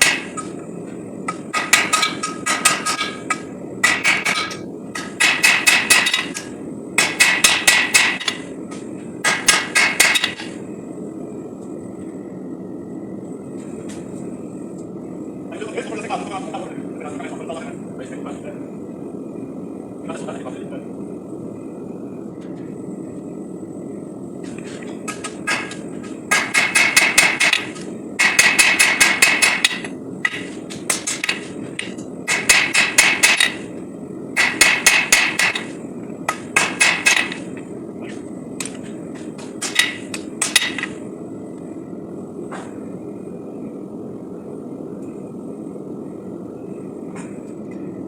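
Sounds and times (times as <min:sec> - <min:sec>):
steady rushing noise: 0:00.0 - 0:48.0
hammer striking steel on anvil: 0:01.3 - 0:06.4, 0:07.0 - 0:08.4, 0:09.3 - 0:10.4, 0:25.1 - 0:33.6, 0:34.4 - 0:35.7, 0:36.6 - 0:37.4, 0:39.6 - 0:41.0.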